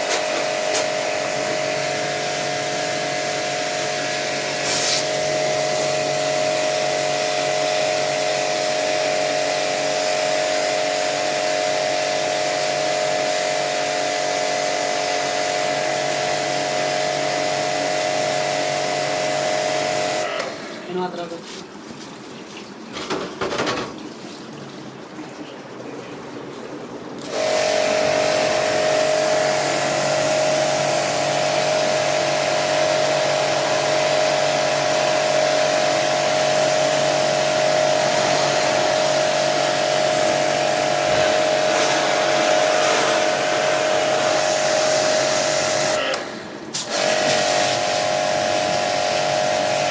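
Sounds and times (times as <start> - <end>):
pressure washer pump whining: 0.0 - 21.2, 27.2 - 49.9
water spray hiss: 4.5 - 6.1.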